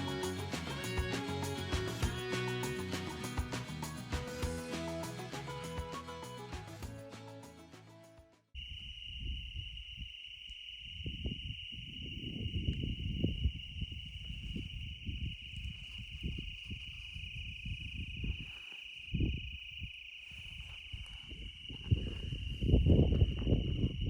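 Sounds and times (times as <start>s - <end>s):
insects trilling: 8.6s - 24.0s.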